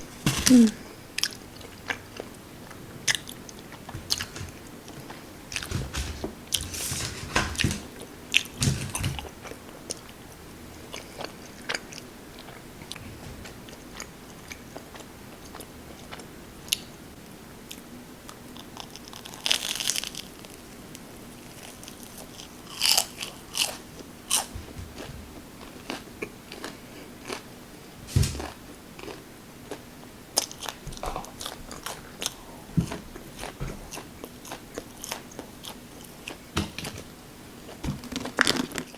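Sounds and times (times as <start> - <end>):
person chewing food: 0.0 - 5.7, 9.2 - 16.9, 21.5 - 27.5, 28.4 - 37.0.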